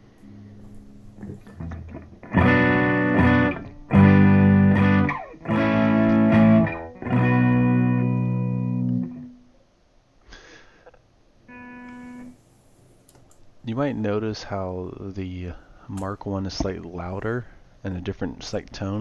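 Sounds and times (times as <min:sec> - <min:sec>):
electric guitar notes and chords: 0:00.0 - 0:09.5, 0:11.5 - 0:12.4.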